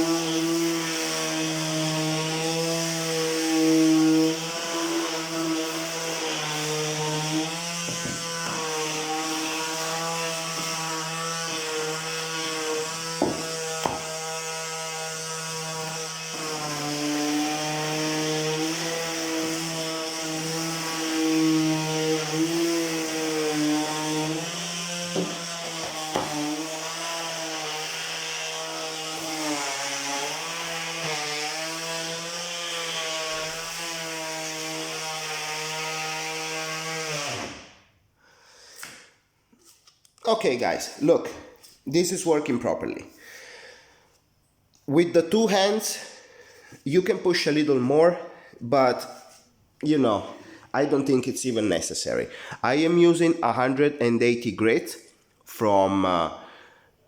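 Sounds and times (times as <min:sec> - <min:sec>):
palm sander on wood: 0:00.0 - 0:37.7.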